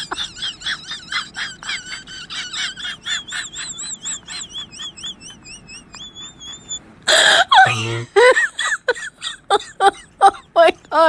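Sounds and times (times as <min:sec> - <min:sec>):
small animal chirping: 0:04.4 - 0:06.8.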